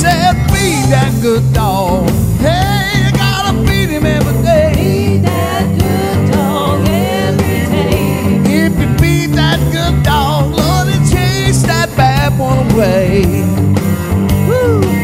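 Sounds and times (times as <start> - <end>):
blues band music: 0.0 - 15.0.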